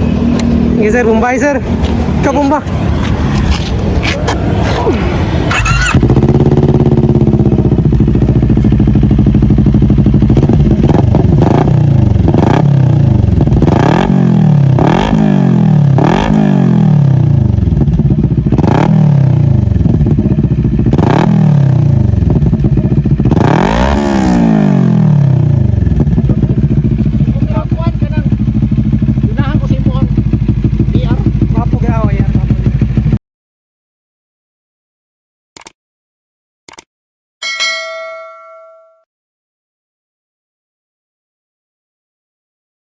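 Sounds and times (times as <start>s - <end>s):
motorcycle engine revving: 0.0s - 33.2s.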